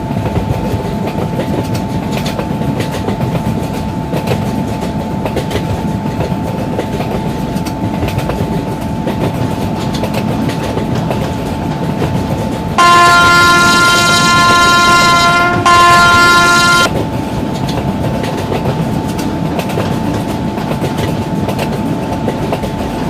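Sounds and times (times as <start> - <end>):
train rumble: 0.0 - 23.0
train wheels clacking on rails: 0.0 - 23.0
train horn: 12.8 - 17.0.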